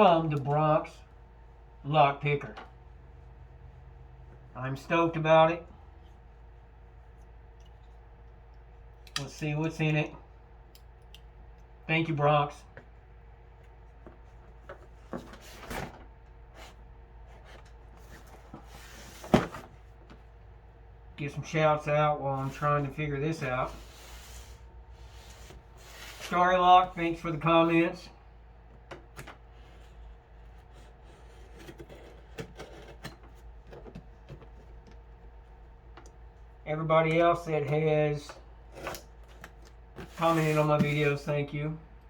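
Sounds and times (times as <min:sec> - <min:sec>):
faint handling sounds: 0:05.6 - 0:11.8, 0:12.6 - 0:20.5, 0:21.3 - 0:41.6
scraping and rustling of cardboard package: 0:29.4 - 0:34.9, 0:38.7 - 0:41.3
scraping rustle: 0:40.0 - 0:41.3.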